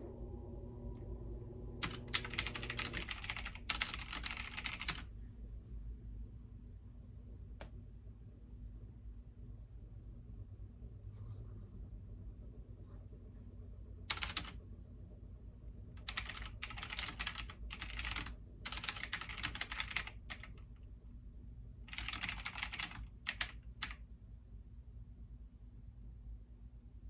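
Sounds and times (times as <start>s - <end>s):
low steady hum: 0.0s - 27.0s
keyboard typing: 1.8s - 5.1s, 14.1s - 14.6s, 16.0s - 20.6s, 21.9s - 24.0s.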